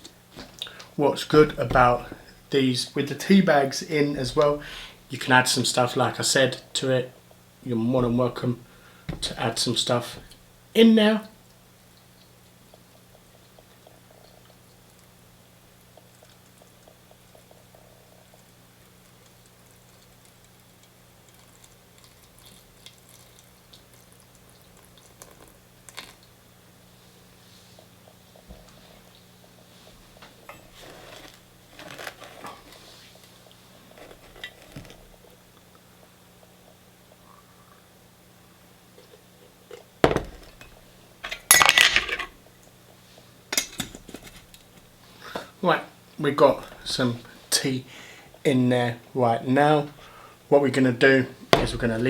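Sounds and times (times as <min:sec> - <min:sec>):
steady low hum: 0:00.0 - 0:19.8, 0:32.7 - 0:52.0.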